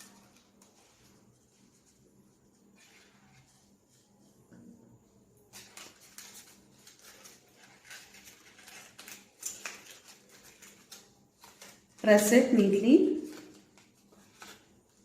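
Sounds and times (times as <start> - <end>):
paper rustling and tapping: 5.5 - 12.2, 13.2 - 15.0.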